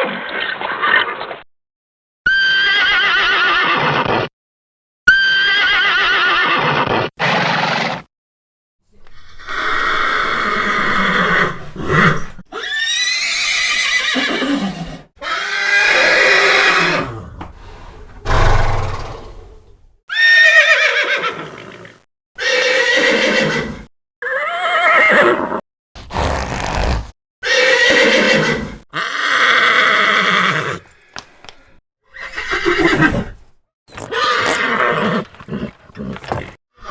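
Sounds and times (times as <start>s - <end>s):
horses whinnying: 9.0s - 17.4s, 27.4s - 31.0s, 32.1s - 36.9s.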